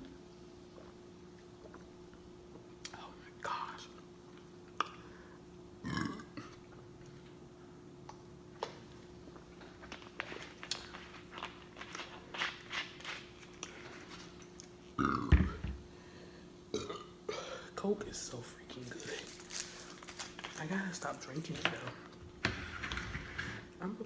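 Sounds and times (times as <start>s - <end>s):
woman burping: 5.8s - 6.6s, 15.0s - 15.5s, 16.7s - 17.7s.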